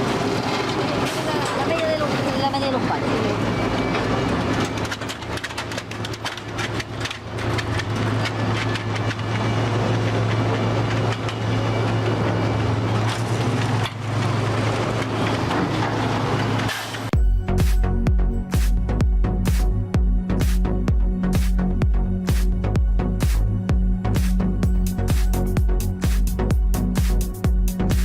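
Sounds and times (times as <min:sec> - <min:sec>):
machinery humming: 0:00.0 - 0:28.0
sharp knocks and clatter: 0:04.5 - 0:09.4.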